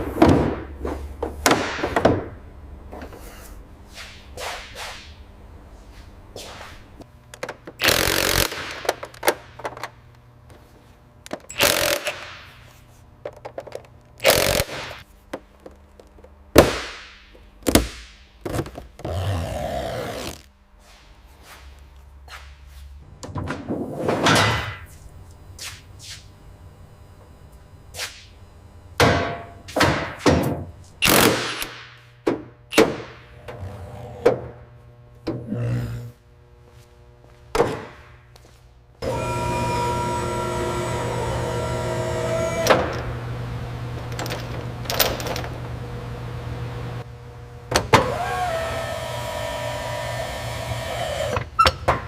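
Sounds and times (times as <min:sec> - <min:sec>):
electric motor whirring: 0:39.0 - 0:42.7, 0:48.0 - 0:51.5.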